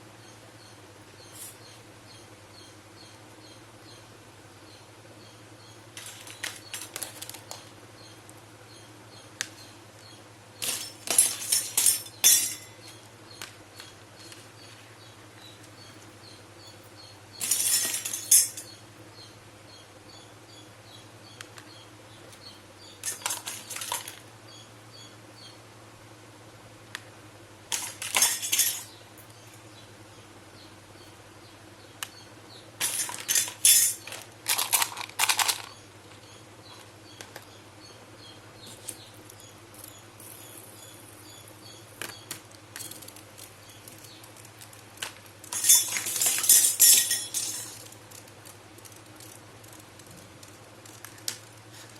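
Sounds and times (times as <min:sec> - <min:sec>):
toy kitchenware clinking: 0:10.6 - 0:12.9, 0:17.4 - 0:18.8, 0:23.0 - 0:24.2, 0:27.7 - 0:29.0, 0:32.8 - 0:35.8, 0:45.0 - 0:47.9.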